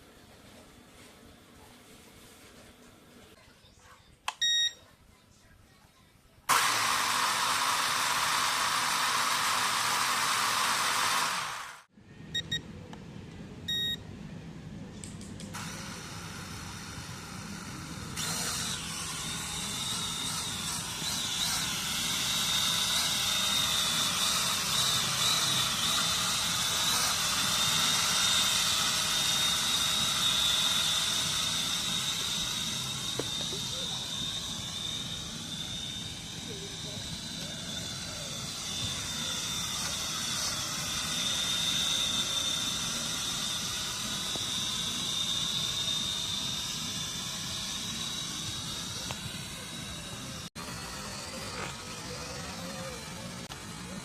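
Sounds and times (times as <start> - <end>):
electronic beeps: 4.4 - 4.8, 12.3 - 12.6, 13.7 - 14.0
drone propellers whirring: 6.5 - 12.3, 15.5 - 54.0.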